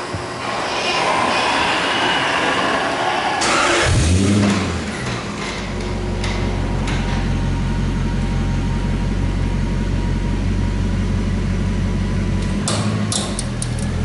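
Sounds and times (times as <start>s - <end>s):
car driving with low drone: 3.4s - 14.0s.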